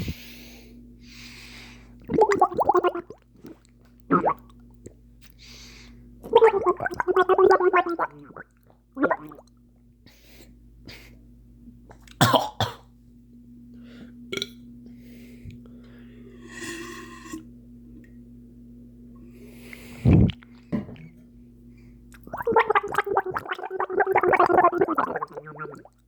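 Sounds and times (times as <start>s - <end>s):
low electrical hum: 0.0s - 26.0s
person gurgling in throat: 4.1s - 4.4s, 6.3s - 9.4s, 20.0s - 20.4s, 22.3s - 26.0s
cough-like burst: 12.2s - 12.9s.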